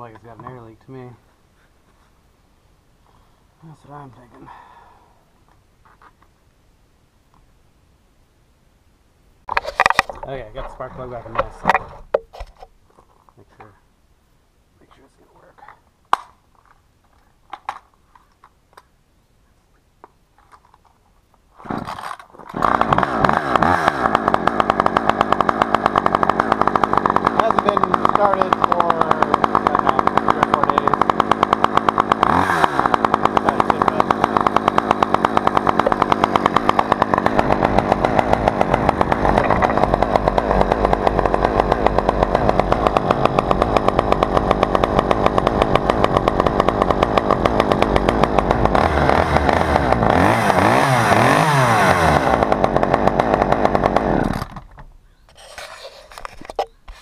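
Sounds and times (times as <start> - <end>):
chainsaw engine running: 21.6 - 54.6.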